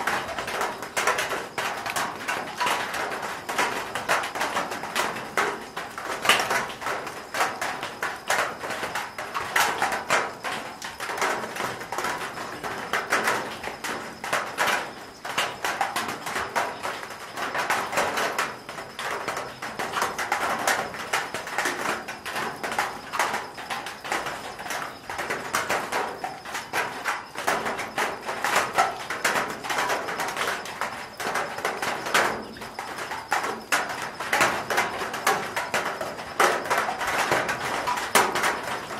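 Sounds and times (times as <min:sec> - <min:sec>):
rain on a metal roof: 0:00.0 - 0:38.9.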